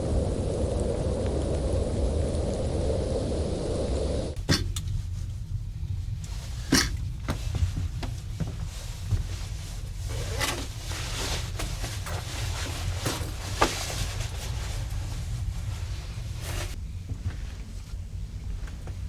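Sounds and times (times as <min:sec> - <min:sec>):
short rustling noises: 0:04.4 - 0:19.0.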